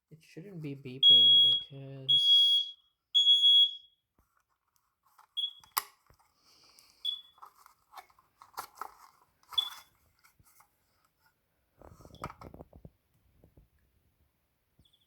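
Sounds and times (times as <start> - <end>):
smoke alarm chirps: 1.0 - 4.0, 5.4 - 5.8, 7.0 - 7.4.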